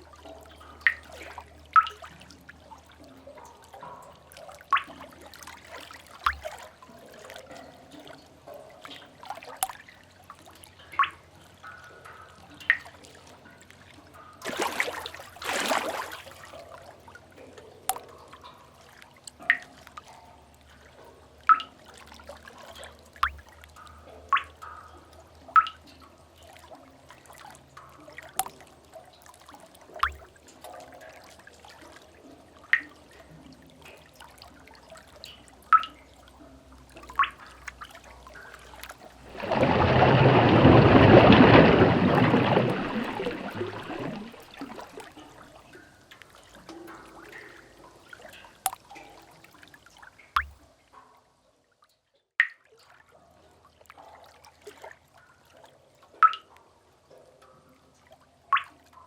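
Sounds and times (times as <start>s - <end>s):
water drops plinking into water: 0.0s - 16.8s, 17.4s - 20.4s, 21.4s - 31.3s, 32.6s - 47.6s, 48.2s - 49.6s, 50.2s - 50.7s, 52.4s - 52.8s, 56.2s - 56.6s, 58.5s - 59.0s
splashing water: 4.2s - 8.2s, 14.4s - 17.2s, 21.5s - 23.6s, 26.5s - 32.0s, 37.0s - 49.7s, 50.3s - 50.6s.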